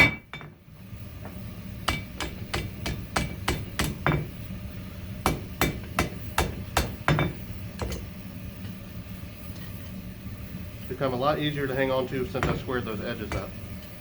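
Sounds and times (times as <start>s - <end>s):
hammer striking hot steel: 0.0s - 0.6s, 1.2s - 8.2s, 11.8s - 13.8s.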